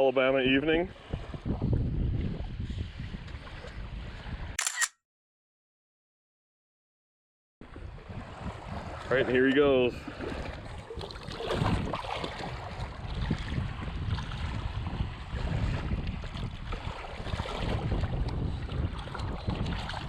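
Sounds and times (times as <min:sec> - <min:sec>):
wind buffeting microphone: 0:00.5 - 0:04.6, 0:07.6 - 0:20.0
water washing at shoreline: 0:07.6 - 0:20.0.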